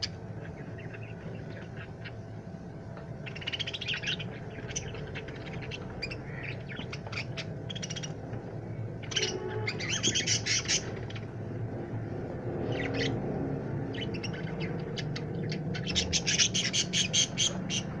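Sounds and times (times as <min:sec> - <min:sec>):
budgerigars chirping: 0:00.4 - 0:02.2, 0:03.2 - 0:08.2, 0:09.0 - 0:11.3, 0:12.6 - 0:13.2, 0:13.9 - 0:18.0.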